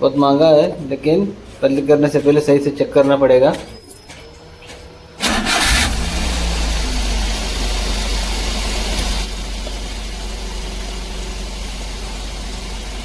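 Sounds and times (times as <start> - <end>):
van engine idling: 4.3 - 13.0.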